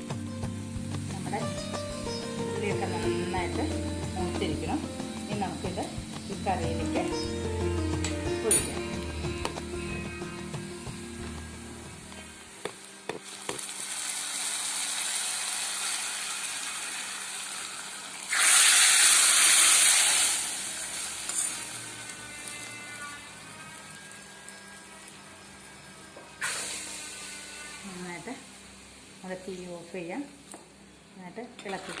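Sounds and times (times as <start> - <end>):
spices sizzling in hot oil: 0.0 - 30.3
hot oil hissing in curry: 0.1 - 8.2, 9.1 - 30.1
metal clinks: 8.4 - 8.9.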